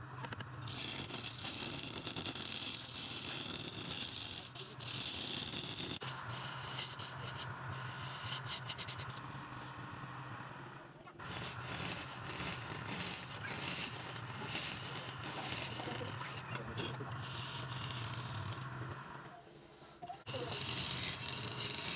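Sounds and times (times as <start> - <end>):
wood lathe humming: 6.0 - 19.3, 20.2 - 21.9
turning tool scraping wood: 11.2 - 19.2, 20.2 - 21.9.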